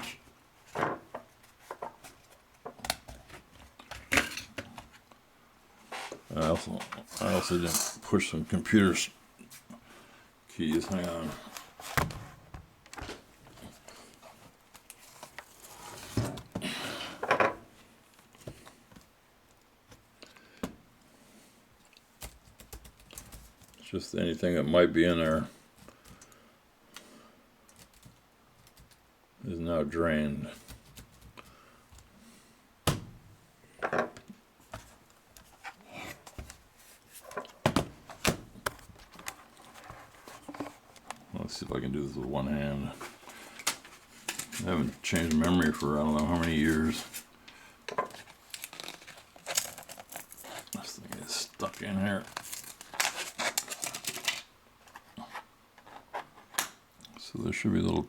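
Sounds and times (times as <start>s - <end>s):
soft rubbing and shuffling: 5.8s - 8.1s, 34.6s - 37.4s
rustling scrape: 15.0s - 16.2s.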